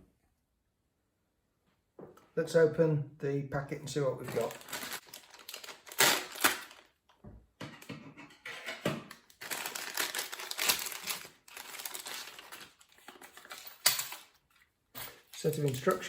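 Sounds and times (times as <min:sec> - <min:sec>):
packaging crinkling and rustling: 0:04.2 - 0:07.2, 0:09.2 - 0:16.0
packaging clicking: 0:04.3 - 0:06.9, 0:09.2 - 0:14.3.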